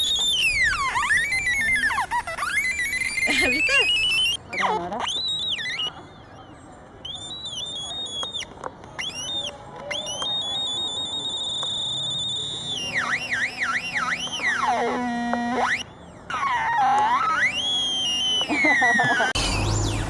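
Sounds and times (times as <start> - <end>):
electronic bird-call chirps: 0.0 - 20.0
stepped electronic buzz: 8.2 - 20.0.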